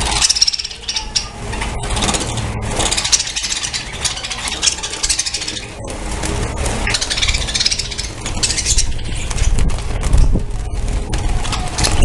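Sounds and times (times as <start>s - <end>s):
budgerigars chattering: 0.0s - 5.8s, 6.8s - 9.6s.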